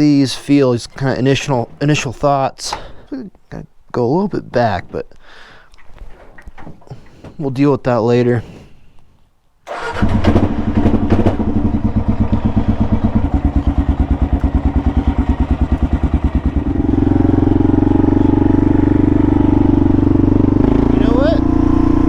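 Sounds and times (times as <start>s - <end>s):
motorcycle engine running: 9.7s - 22.0s.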